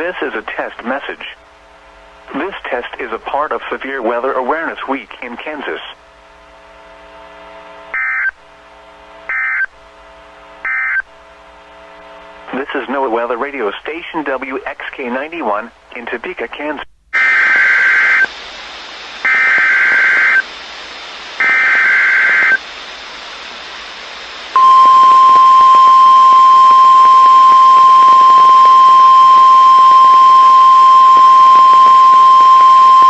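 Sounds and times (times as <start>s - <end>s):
steady warning alarm tone: 19.3s - 20.4s, 21.4s - 22.6s, 24.6s - 33.0s.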